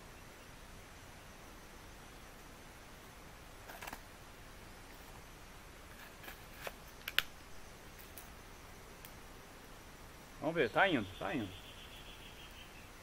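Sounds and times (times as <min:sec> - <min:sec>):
campfire crackling and popping: 0:05.8 - 0:08.4, 0:09.0 - 0:09.8.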